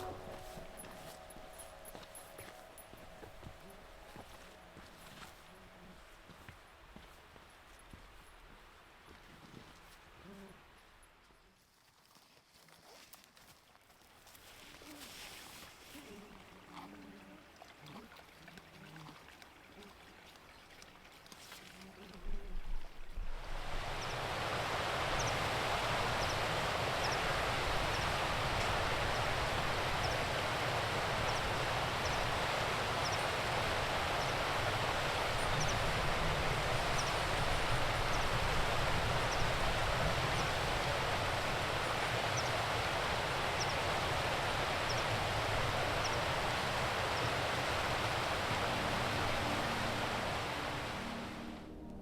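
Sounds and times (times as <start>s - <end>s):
mountain stream rushing: 0.0s - 10.8s, 22.6s - 52.0s.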